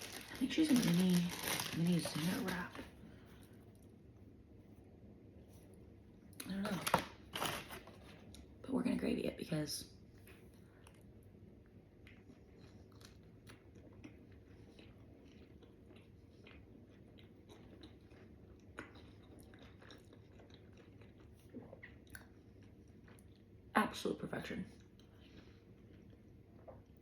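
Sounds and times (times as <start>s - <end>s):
person chewing food: 11.9s - 23.7s, 24.7s - 27.0s.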